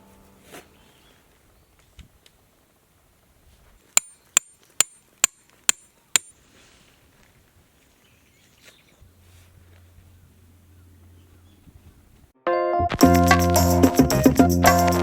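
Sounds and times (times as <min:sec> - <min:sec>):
hammer striking metal: 0:04.0 - 0:06.3.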